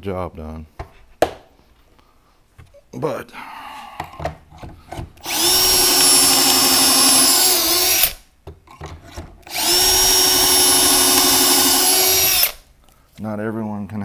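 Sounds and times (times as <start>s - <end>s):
drill motor whine: 5.2s - 8.2s, 9.4s - 12.6s.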